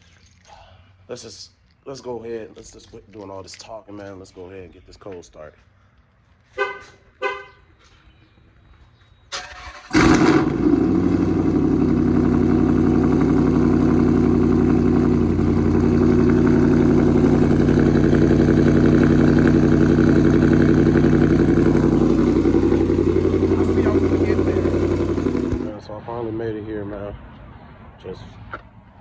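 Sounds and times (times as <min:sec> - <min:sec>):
car engine starting and idling: 0:09.3 - 0:25.8.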